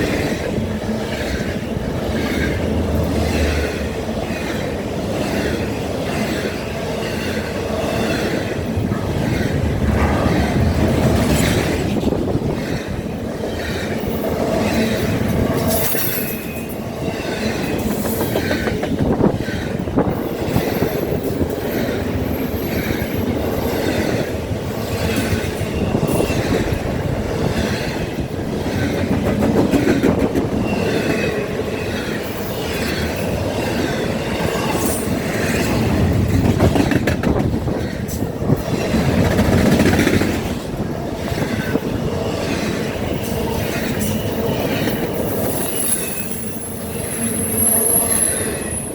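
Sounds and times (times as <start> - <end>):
wheels clacking over rail joints: 0.0 - 45.2
freight train wheels rumbling: 0.0 - 48.9
high-pitched wheel squeal: 45.3 - 48.9.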